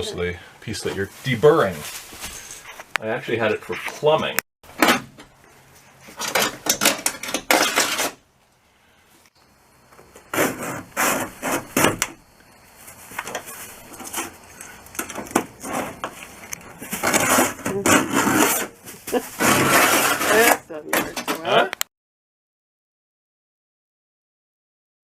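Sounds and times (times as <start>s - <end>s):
tool scraping sheet metal edge: 10.3s - 12.1s, 16.9s - 20.6s.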